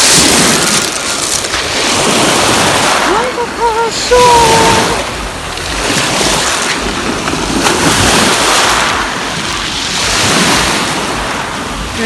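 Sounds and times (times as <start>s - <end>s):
sea waves breaking on shore: 0.0s - 12.0s.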